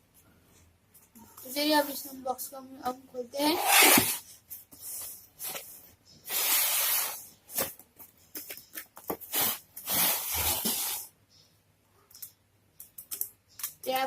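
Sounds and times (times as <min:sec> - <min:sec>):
cardboard box rustling and scraping: 0:03.5 - 0:04.3, 0:09.2 - 0:11.1.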